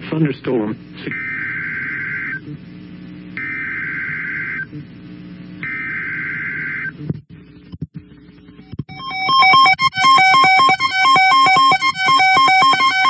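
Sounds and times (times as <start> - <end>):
steady low hum: 0.0 - 13.0
two-tone digital data bursts: 8.9 - 13.0.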